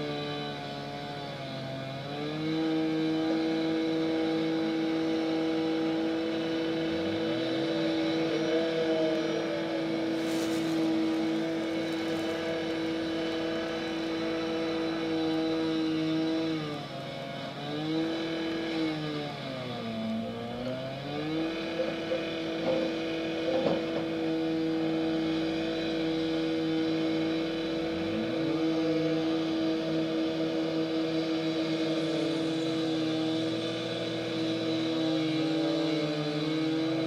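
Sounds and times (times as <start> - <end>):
machine engine revving: 2.1 - 19.1.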